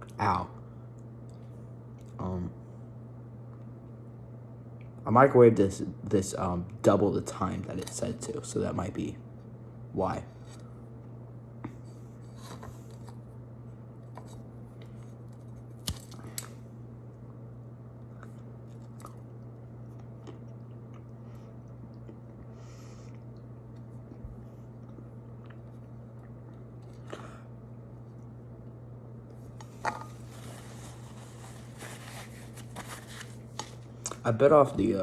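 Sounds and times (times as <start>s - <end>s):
steady low hum: 0.0s - 35.0s
chewing and crunching cookie: 11.7s - 34.4s.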